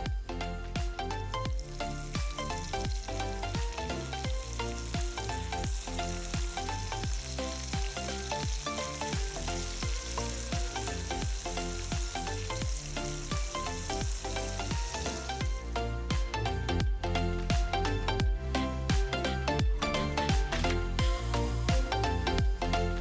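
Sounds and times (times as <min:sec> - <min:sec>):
music with steady beat: 0:00.0 - 0:23.0
food sizzling in a pan: 0:01.6 - 0:15.6.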